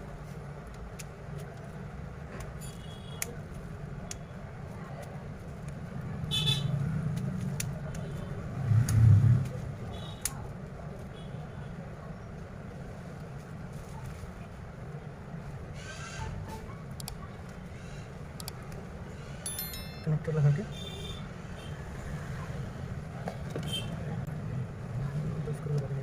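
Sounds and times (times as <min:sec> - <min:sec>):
traffic engine rumble: 0:00.0 - 0:26.0
vehicle passing: 0:08.4 - 0:09.8.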